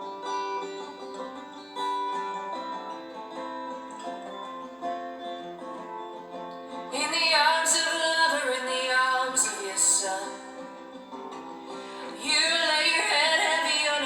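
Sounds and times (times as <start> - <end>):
acoustic guitar playing: 0.0 - 14.0
person singing: 6.8 - 10.9, 11.7 - 14.0.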